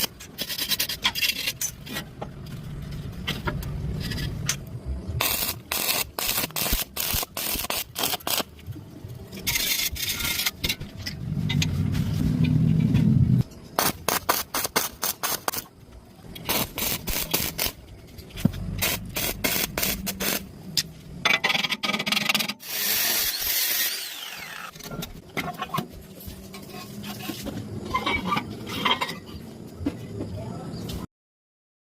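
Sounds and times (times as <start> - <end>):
scraping on metal: 24.9 - 29.4.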